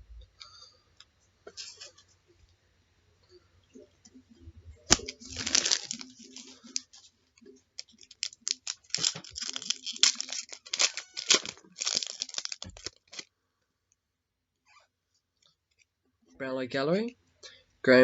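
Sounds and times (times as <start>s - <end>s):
wrapper tearing and crinkling: 4.9s - 7.0s, 7.8s - 13.3s
cards clicking when handled: 7.8s - 13.2s.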